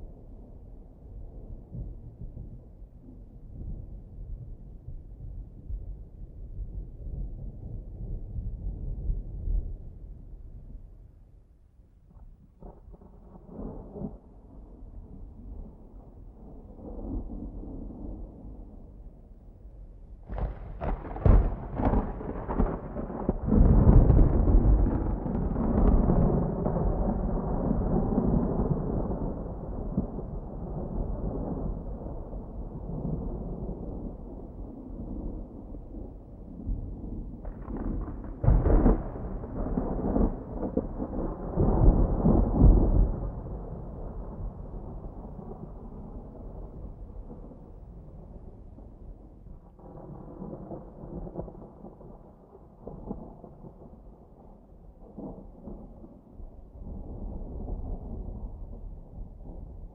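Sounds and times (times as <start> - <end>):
thunder rumbling and cracking: 12.6 - 59.9
sharp thunder crack: 20.3 - 28.8.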